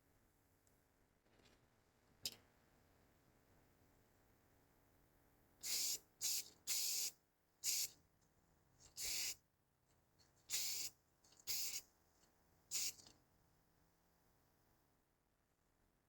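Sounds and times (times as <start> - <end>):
spray can hissing: 5.6 - 7.9, 8.9 - 9.4, 10.5 - 11.8, 12.7 - 13.1.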